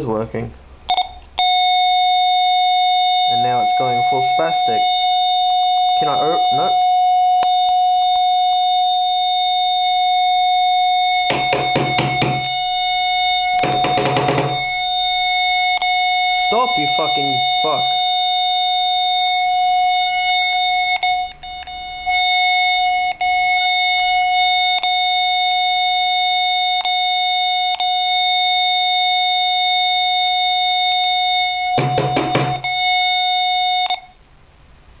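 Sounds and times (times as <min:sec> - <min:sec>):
continuous high electronic beep: 0:00.9 - 0:34.2.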